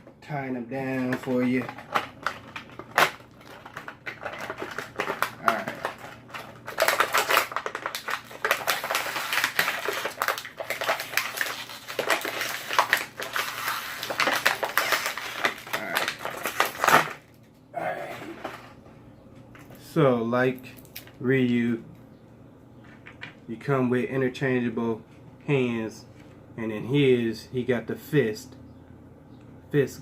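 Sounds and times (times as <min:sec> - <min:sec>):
plastic packaging crinkling: 0:00.6 - 0:17.5.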